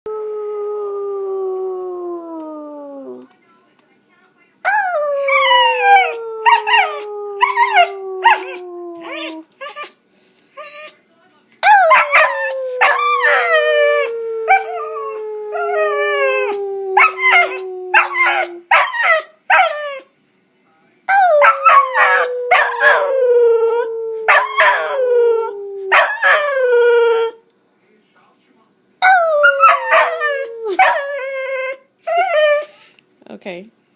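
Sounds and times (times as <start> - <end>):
dog howling: 0.1 - 3.3, 4.7 - 9.9, 11.6 - 20.0, 21.1 - 27.4, 29.0 - 32.7.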